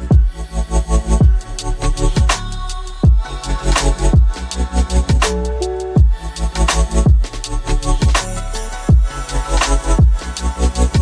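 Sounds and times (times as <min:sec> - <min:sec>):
deep bass drum hits: 0:00.1 - 0:00.4, 0:01.2 - 0:01.4, 0:03.0 - 0:03.3, 0:04.2 - 0:04.4, 0:06.0 - 0:06.2, 0:07.0 - 0:07.4, 0:08.0 - 0:08.2, 0:08.9 - 0:09.2, 0:10.0 - 0:10.2.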